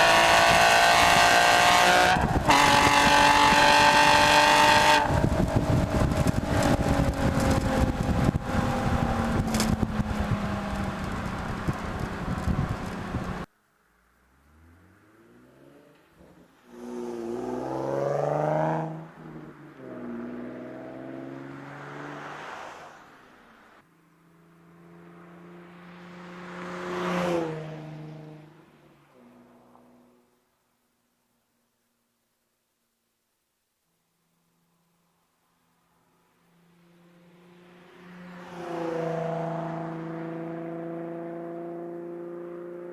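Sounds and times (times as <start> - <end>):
car engine revving: 0.0 - 13.5
heavy rushing noise: 2.0 - 13.5.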